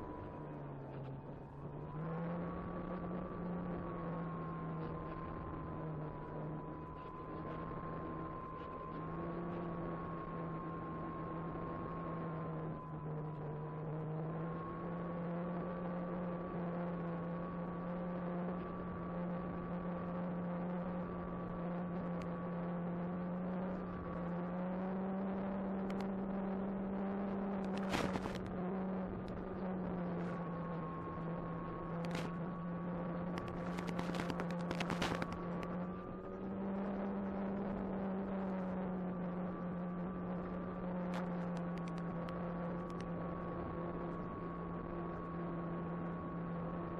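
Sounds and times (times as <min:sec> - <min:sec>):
brief crackles: 0:27.6 - 0:28.4, 0:33.4 - 0:35.4.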